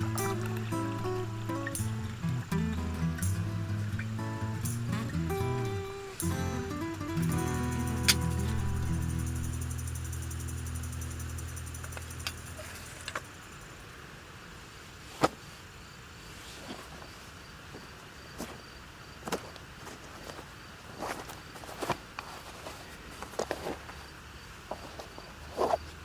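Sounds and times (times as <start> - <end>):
acoustic guitar music: 0.0 - 13.6
faint high pulsing chirp: 0.0 - 13.8.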